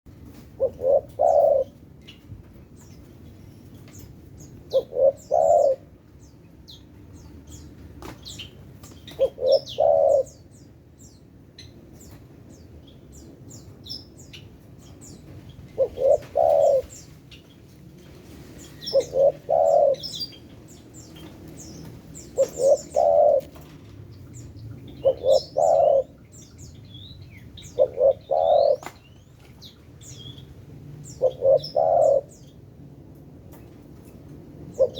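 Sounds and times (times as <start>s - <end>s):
small birds chirping: 0.3s - 32.7s, 33.5s - 34.9s
dove cooing: 0.4s - 1.9s, 4.4s - 6.0s, 9.1s - 10.6s, 15.7s - 17.2s, 18.6s - 23.7s, 24.8s - 26.7s, 27.6s - 30.3s, 31.0s - 32.4s.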